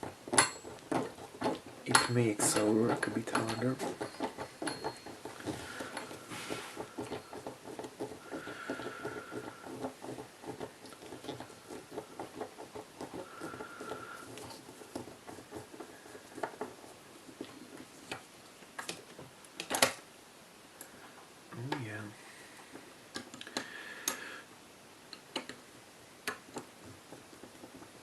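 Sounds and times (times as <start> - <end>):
screwdriver clicking and scraping: 0.3 - 18.2.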